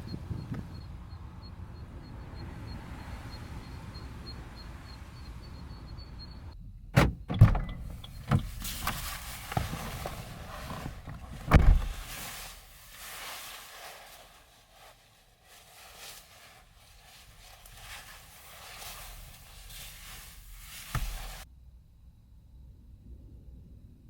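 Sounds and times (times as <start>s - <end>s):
knocks and clunks of car doors: 6.9s - 12.1s
heavy thump: 7.0s - 12.2s, 20.9s - 21.4s.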